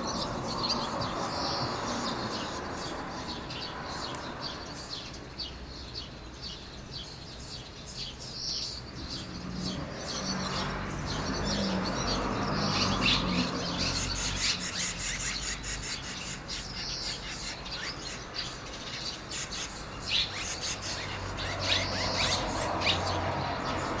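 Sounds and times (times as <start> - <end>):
swallows chirping: 0.0 - 24.0.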